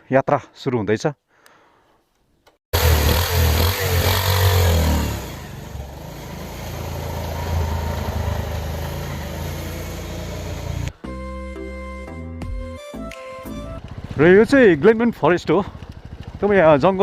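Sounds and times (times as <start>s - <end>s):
motorcycle engine revving: 2.8s - 10.9s, 13.8s - 17.0s.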